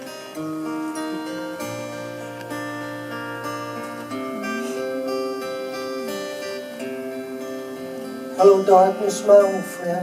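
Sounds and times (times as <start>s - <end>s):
acoustic guitar picking notes: 0.0s - 10.0s.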